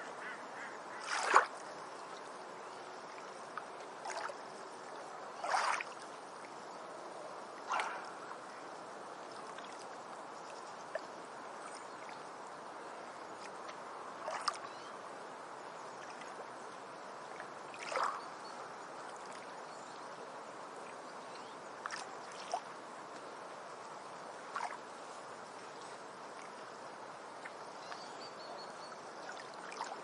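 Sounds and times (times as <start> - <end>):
moving water: 0.0 - 30.0
sharp splashes: 1.0 - 1.6, 4.0 - 4.4, 5.4 - 6.0, 7.6 - 8.4, 14.2 - 14.7, 17.7 - 18.3, 24.5 - 24.8, 29.2 - 30.0.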